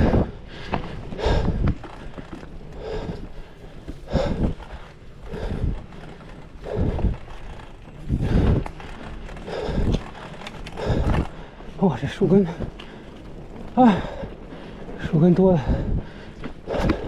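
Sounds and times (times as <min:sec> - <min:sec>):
wind on microphone: 0:00.0 - 0:00.4, 0:06.6 - 0:09.0
bike rattling on rough trail: 0:00.0 - 0:17.0.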